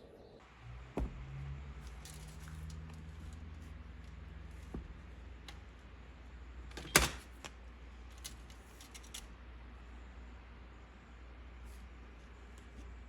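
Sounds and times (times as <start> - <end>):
low steady hum: 0.0 - 13.0
light clicks and handling noises: 1.8 - 5.8, 6.7 - 9.4.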